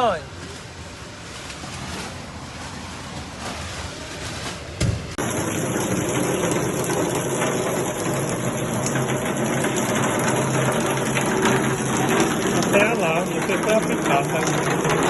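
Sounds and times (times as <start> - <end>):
heavy rain pouring: 5.2 - 15.0.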